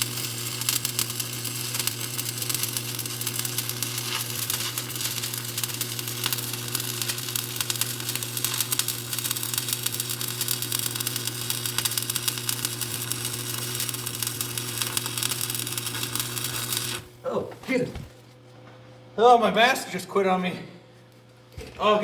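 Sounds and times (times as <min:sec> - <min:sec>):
welding arc crackling sizzle: 0:00.0 - 0:17.2.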